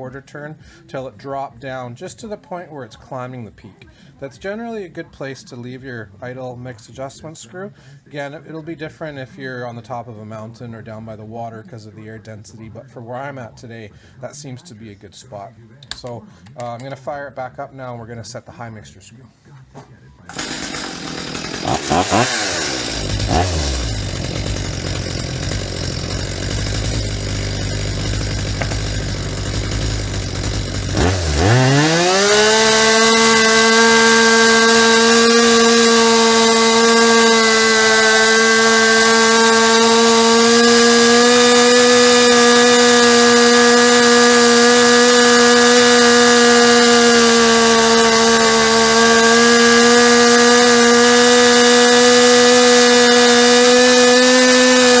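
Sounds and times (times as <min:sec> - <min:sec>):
chainsaw engine revving: 0:20.3 - 0:55.0.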